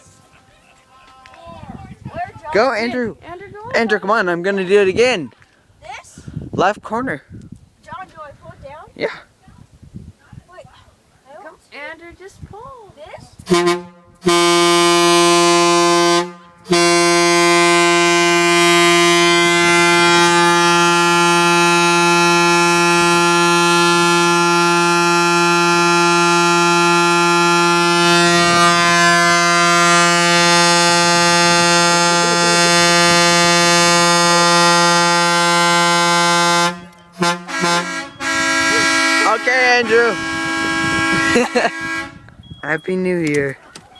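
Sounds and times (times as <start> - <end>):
truck air horn blowing: 13.4 - 42.3.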